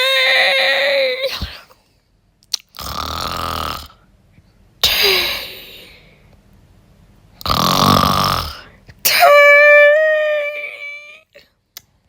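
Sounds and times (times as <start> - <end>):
person imitating snoring: 2.8 - 4.0, 7.4 - 8.7.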